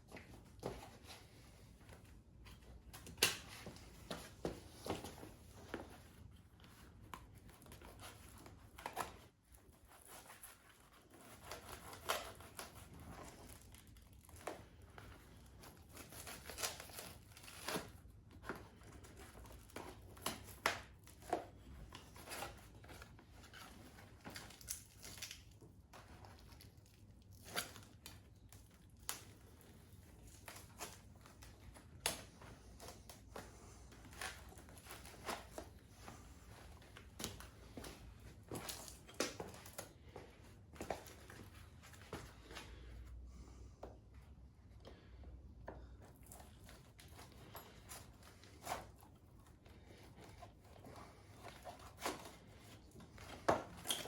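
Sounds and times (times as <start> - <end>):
tape crackling and tearing: 6.8 - 33.3.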